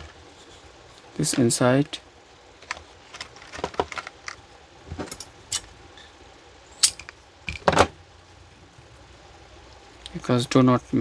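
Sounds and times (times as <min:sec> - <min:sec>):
wire and plastic clicks and rattles: 0:02.6 - 0:05.7, 0:06.8 - 0:07.9.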